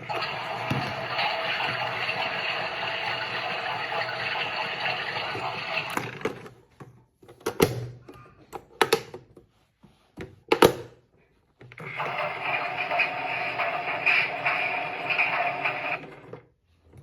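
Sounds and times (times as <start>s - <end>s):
water rushing into washing machine: 0.0s - 6.4s, 11.8s - 16.3s.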